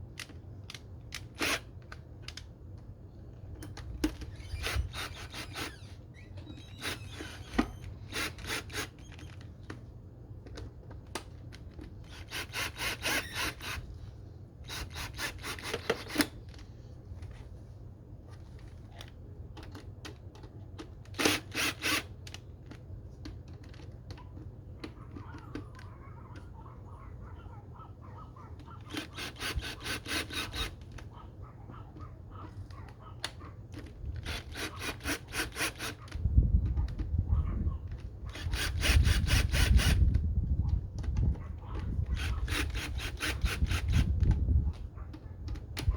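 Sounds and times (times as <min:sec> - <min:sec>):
scraping and handling noise: 0:00.0 - 0:45.9
hand tool ratcheting clicks: 0:10.6 - 0:13.8, 0:14.7 - 0:16.6, 0:19.0 - 0:22.4, 0:28.8 - 0:31.1, 0:33.2 - 0:37.0, 0:37.9 - 0:40.2, 0:41.8 - 0:44.4.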